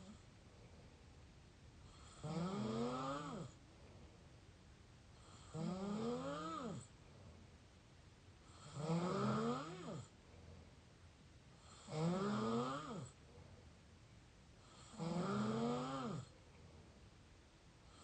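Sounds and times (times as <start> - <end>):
person snoring: 1.9 - 3.6, 5.2 - 6.9, 8.5 - 10.1, 11.6 - 13.2, 14.7 - 16.3.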